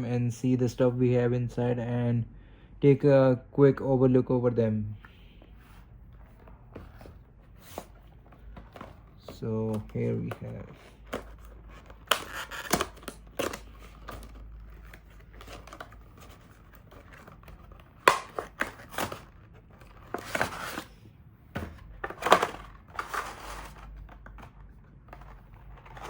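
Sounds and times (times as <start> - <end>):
packaging rustling and crinkling: 5.6 - 26.0.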